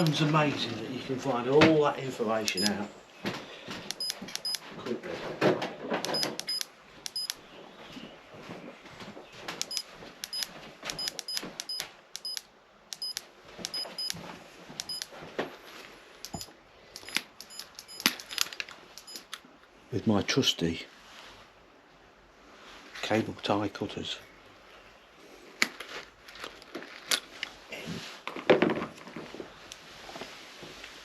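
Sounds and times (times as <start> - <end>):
metal tools clicking and tapping: 2.5 - 2.7, 16.2 - 19.4.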